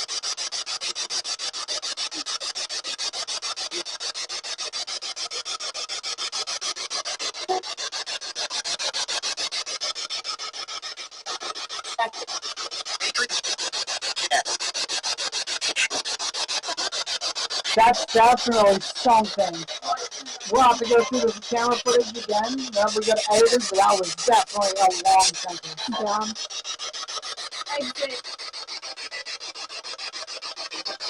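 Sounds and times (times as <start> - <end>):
pulsing radio static: 12.0 - 12.3, 17.7 - 26.4, 27.7 - 28.2
snatches of radio sound: 17.7 - 26.4.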